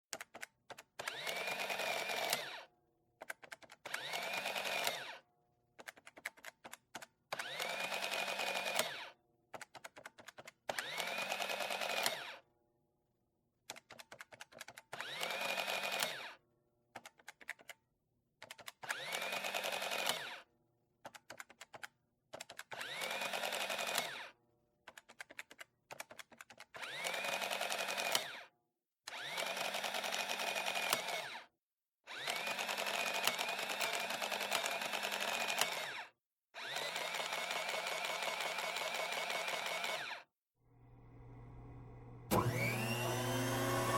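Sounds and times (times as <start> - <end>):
printer whirring: 42.3 - 43.9.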